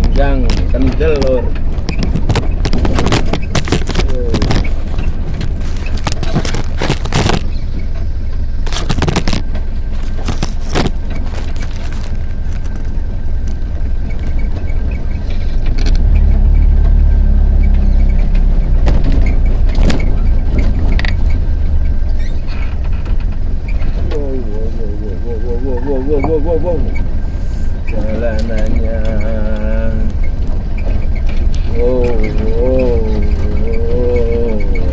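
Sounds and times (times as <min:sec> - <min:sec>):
clattering knocks over bumps: 0:00.0 - 0:07.6, 0:17.7 - 0:24.2
vehicle engine and road rumble: 0:00.0 - 0:34.9.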